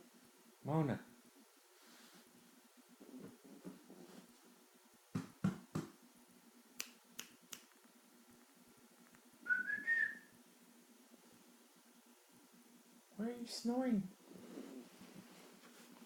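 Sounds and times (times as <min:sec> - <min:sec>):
finger snaps: 0:06.8 - 0:07.8
short rising whistle: 0:09.5 - 0:10.3.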